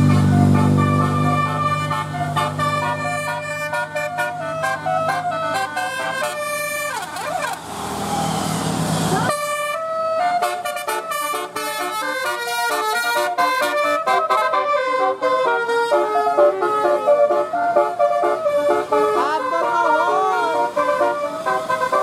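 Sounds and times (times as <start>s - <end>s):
multi-tone bus air horns: 0.0s - 8.0s, 8.6s - 22.0s
sliding siren-like tones: 0.0s - 11.2s
bus engine running: 0.0s - 22.0s.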